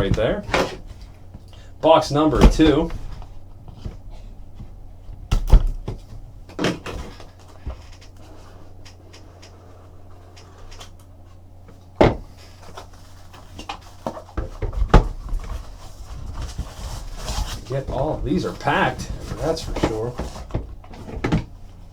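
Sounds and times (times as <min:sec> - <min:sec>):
cardboard box being handled: 0:12.4 - 0:21.4.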